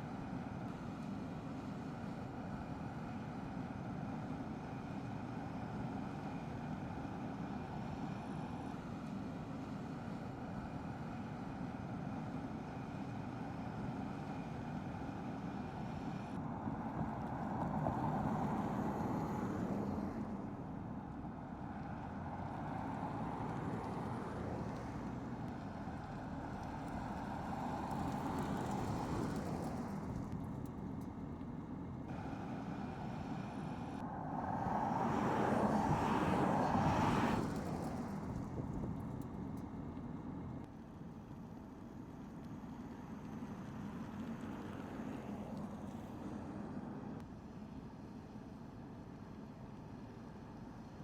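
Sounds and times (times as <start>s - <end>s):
tyre and road noise: 21.8s - 40.7s.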